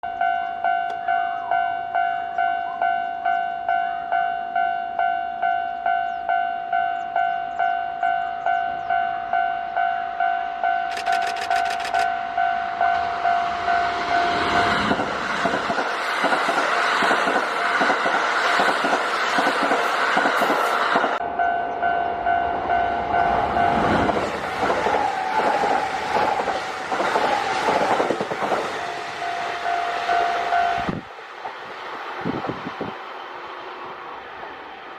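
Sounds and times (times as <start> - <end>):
level-crossing warning bell: 0.0 - 15.0, 21.1 - 26.5, 28.7 - 31.0
train rumbling and wheel clatter: 0.0 - 34.9.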